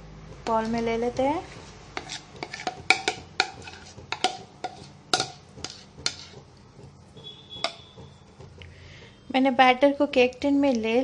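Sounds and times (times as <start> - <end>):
utensil scraping a bowl: 1.5 - 6.5.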